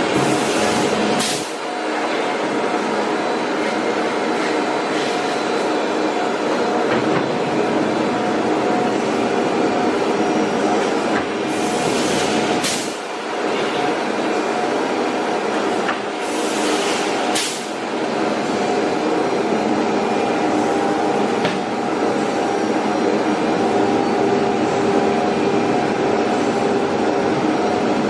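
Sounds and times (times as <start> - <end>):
short air hisses: 16.2 - 17.7.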